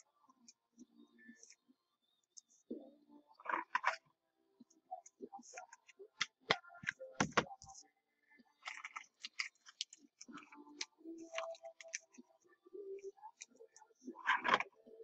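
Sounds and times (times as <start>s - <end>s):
plastic scraping: 3.4s - 4.0s, 5.6s - 7.7s, 8.6s - 12.2s, 14.2s - 14.8s.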